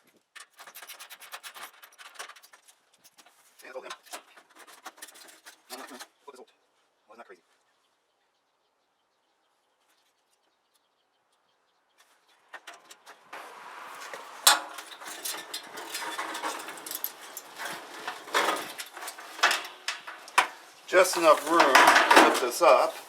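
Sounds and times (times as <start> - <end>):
sheet metal clattering: 13.9 - 23.0.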